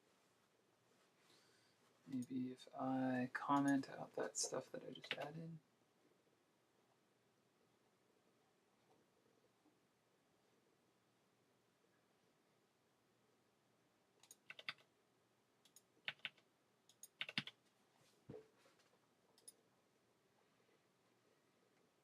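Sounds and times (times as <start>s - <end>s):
keyboard typing: 4.9s - 5.3s, 14.2s - 14.9s, 15.7s - 17.6s.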